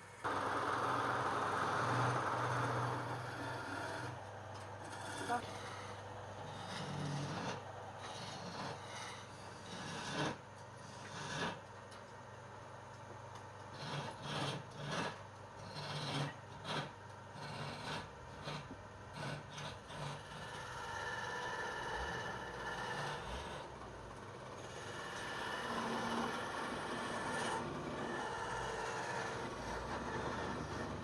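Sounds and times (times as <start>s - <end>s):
low machine hum: 0.0s - 31.0s
wood rubbing and scraping: 24.6s - 31.0s.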